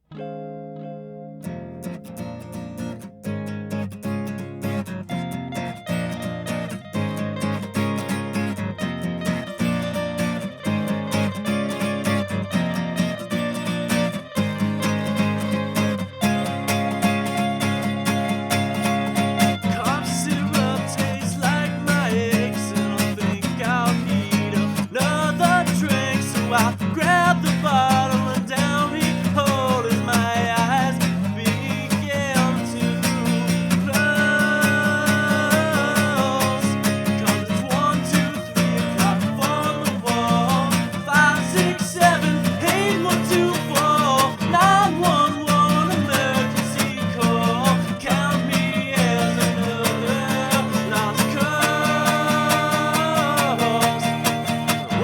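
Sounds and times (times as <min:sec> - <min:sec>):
strummed acoustic guitar: 0:00.0 - 0:55.0
person singing: 0:15.8 - 0:55.0.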